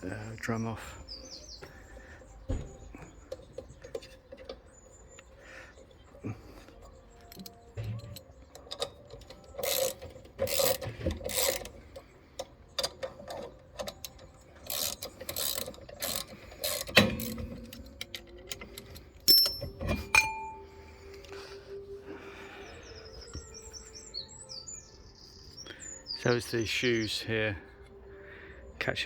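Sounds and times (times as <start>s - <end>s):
ratchet wrench clicking: 8.5s - 11.8s, 12.8s - 20.2s
metallic clanks: 12.8s - 20.8s.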